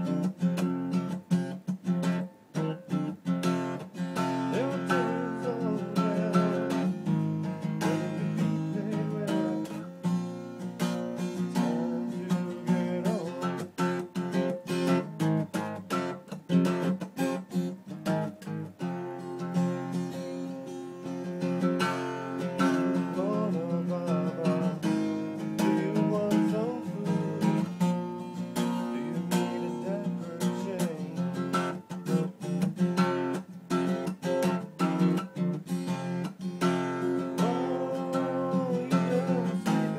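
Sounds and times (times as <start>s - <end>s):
acoustic guitar strumming: 0.0s - 39.9s
person singing: 4.2s - 10.0s, 11.1s - 13.8s, 21.8s - 32.6s, 36.6s - 39.9s.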